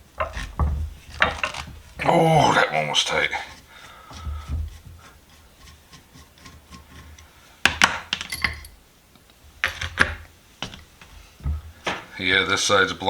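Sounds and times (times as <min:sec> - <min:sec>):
metal vise parts knocking: 0:00.0 - 0:02.0, 0:06.4 - 0:08.8, 0:09.6 - 0:12.2
light metal clinks: 0:08.2 - 0:08.8.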